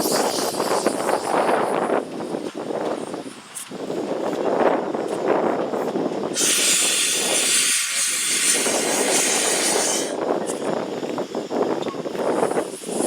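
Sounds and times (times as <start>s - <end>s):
steam locomotive hissing: 0.0s - 2.1s, 6.2s - 13.0s.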